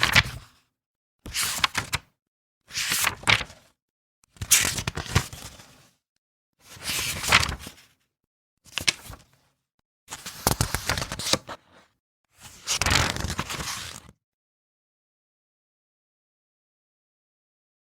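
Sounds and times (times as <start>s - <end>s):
book pages turning: 2.8s - 3.6s, 4.4s - 5.8s, 6.9s - 7.8s, 8.7s - 9.2s, 10.1s - 11.8s, 12.4s - 14.1s.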